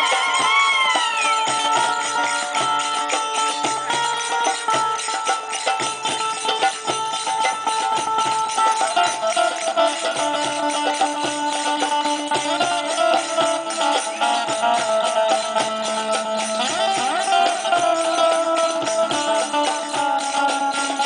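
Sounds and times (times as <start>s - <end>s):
hand percussion with jingles: 0.0s - 21.0s
melody instrument holding long notes: 0.0s - 21.0s.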